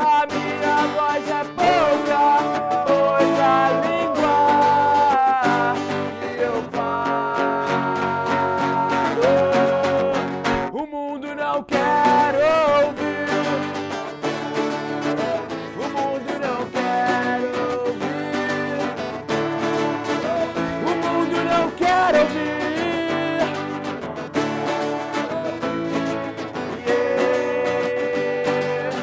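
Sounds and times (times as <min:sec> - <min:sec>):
band playing song: 0:00.0 - 0:06.6
guitar: 0:00.0 - 0:29.0
wavering melody line: 0:01.6 - 0:05.2.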